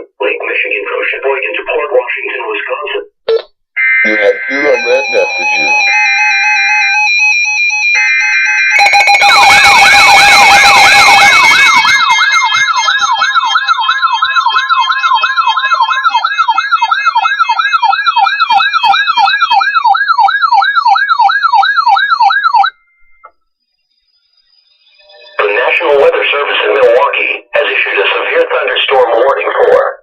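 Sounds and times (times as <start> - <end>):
alert alarm sweeping siren: 3.8 - 27.0
steady alarm tone: 3.8 - 28.2.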